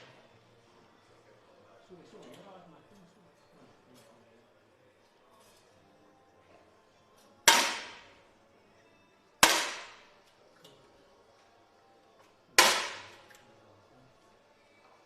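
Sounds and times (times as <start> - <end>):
air rifle shots echoing: 7.5 - 8.2, 9.4 - 10.1, 12.6 - 13.2.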